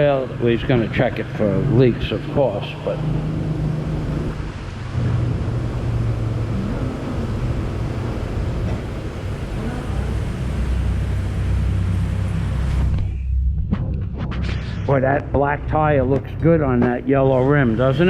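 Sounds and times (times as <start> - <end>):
motor humming: 2.9 - 13.1.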